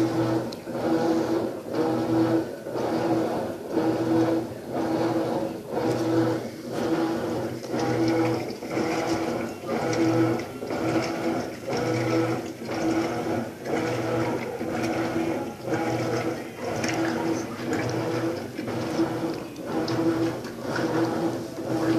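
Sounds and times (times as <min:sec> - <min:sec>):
washing machine agitator churning: 0:00.0 - 0:21.9.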